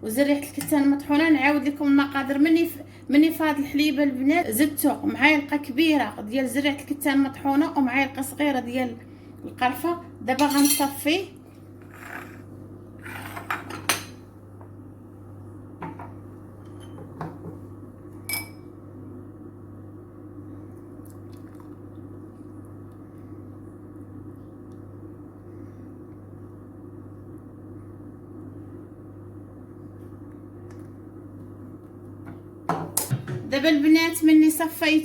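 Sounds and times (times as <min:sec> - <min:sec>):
steady low hum: 0:00.0 - 0:35.0
pot and strainer clinking glass: 0:18.3 - 0:18.6.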